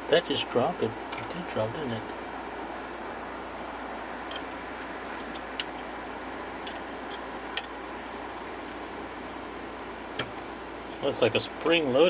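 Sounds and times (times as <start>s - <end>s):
steady background hiss: 0.0s - 12.0s.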